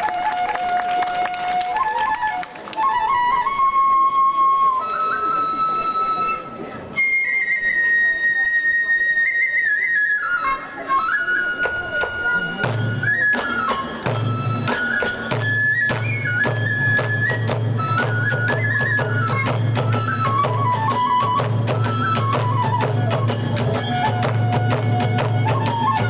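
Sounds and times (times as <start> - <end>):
bamboo flute melody: 0.0 - 26.0
drums: 11.5 - 26.0
hand cymbals clashing: 12.7 - 17.9.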